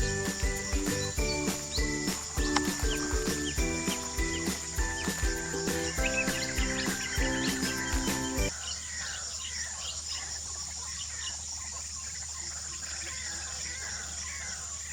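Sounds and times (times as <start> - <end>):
background music: 0.0 - 8.5
bird's falling chirps: 0.0 - 8.5
high insect drone: 0.0 - 8.6.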